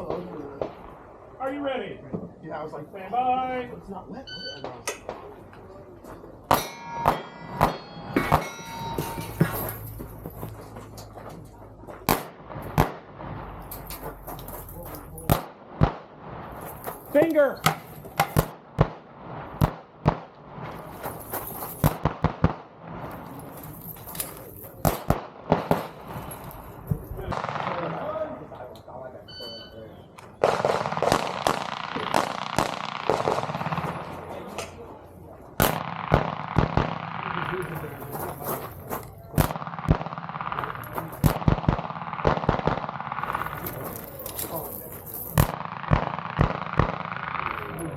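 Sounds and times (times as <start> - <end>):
pistol shots: 6.5 - 9.6, 12.0 - 14.0, 15.2 - 21.1, 21.7 - 28.4, 30.1 - 34.8, 35.6 - 38.3, 39.2 - 47.9
handgun shots: 17.2 - 18.9.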